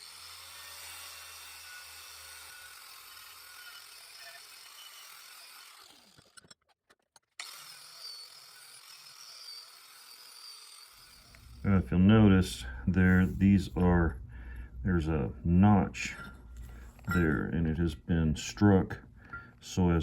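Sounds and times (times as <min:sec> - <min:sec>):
low hum: 0:11.2 - 0:19.6.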